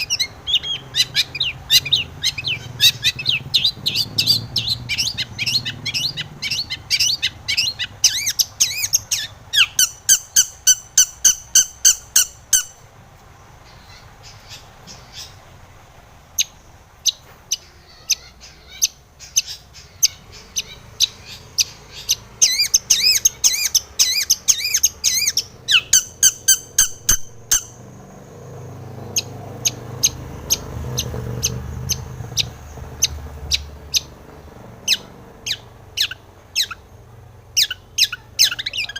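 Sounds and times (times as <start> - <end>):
bird singing sharp high notes: 16.4 - 28.0.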